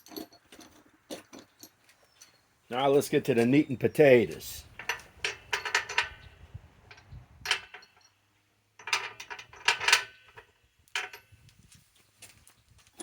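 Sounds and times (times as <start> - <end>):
metal screws clinking: 0.0 - 2.4, 4.8 - 6.3, 6.9 - 8.2.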